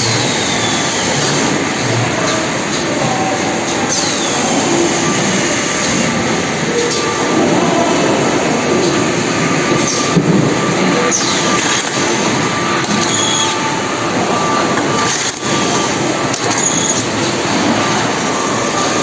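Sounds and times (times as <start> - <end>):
falling whistle: 0.0 - 1.5, 9.8 - 16.0
packaging machinery clattering: 0.0 - 19.0.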